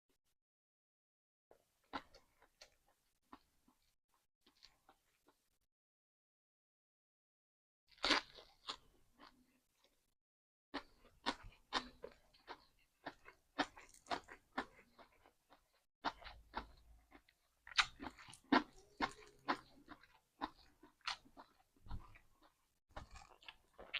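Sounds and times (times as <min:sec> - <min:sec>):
person chewing food: 0:01.5 - 0:05.5, 0:07.9 - 0:10.0, 0:10.8 - 0:23.9.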